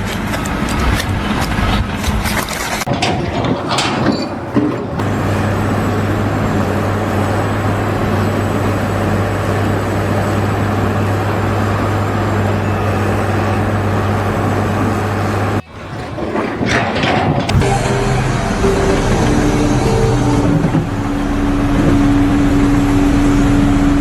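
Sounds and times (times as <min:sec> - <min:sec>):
machine humming: 0:00.0 - 0:24.0.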